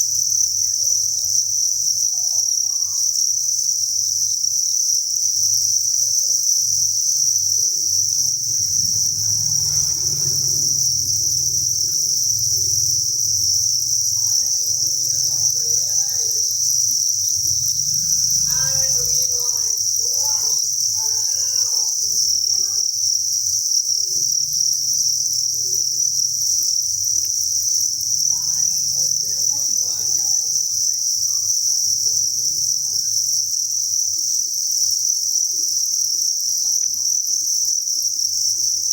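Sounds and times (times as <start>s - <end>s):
crickets chirping chorus: 0.0s - 38.9s
faint voices murmuring: 8.1s - 22.9s, 28.1s - 32.2s.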